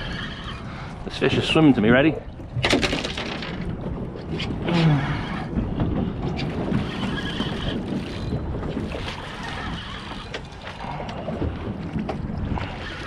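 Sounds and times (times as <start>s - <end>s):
water sloshing around boat: 0.0s - 13.0s
wind buffeting microphone: 0.0s - 13.0s.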